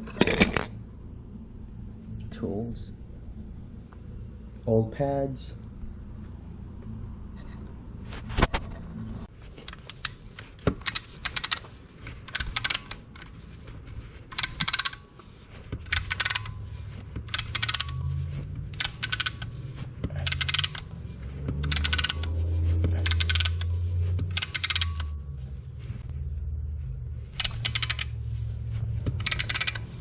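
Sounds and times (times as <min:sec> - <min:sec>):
metal parts and tools clattering: 0:00.0 - 0:00.8, 0:14.2 - 0:25.3, 0:27.2 - 0:28.2, 0:29.0 - 0:30.0.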